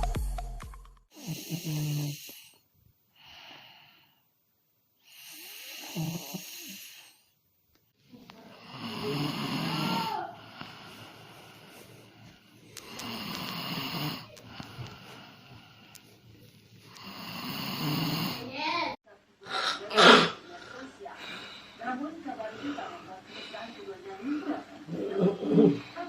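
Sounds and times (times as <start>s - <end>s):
person snoring: 1.1s - 2.6s, 5.0s - 7.3s, 8.5s - 16.1s, 16.9s - 21.6s, 24.9s - 26.0s.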